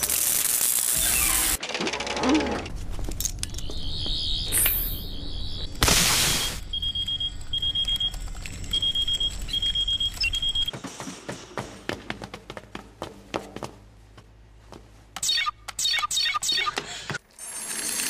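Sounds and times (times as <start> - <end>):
hiss burst: 5.8 - 6.6.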